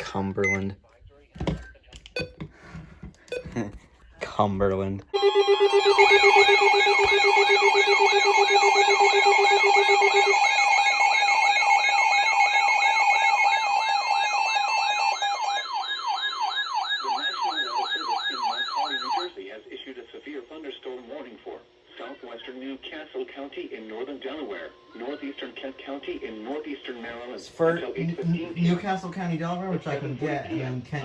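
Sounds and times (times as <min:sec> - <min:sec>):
pulsing low beep: 0:05.2 - 0:15.0
siren tone sweeping up and down: 0:05.2 - 0:19.3
warbling alarm beeps: 0:05.2 - 0:19.3.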